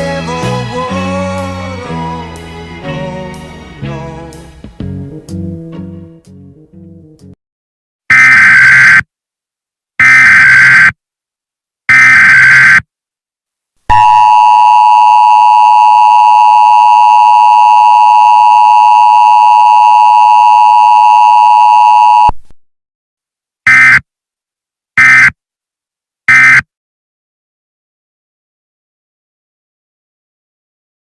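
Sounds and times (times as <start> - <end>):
digital data bursts: 8.1 - 9.0, 10.0 - 10.9, 11.9 - 12.8, 25.0 - 25.3, 26.3 - 26.6.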